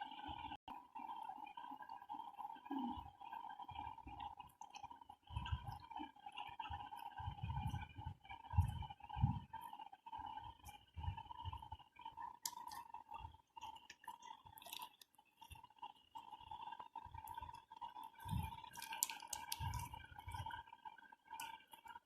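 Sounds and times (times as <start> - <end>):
slime squishing by hand: 12.3 - 15.6, 18.2 - 20.4.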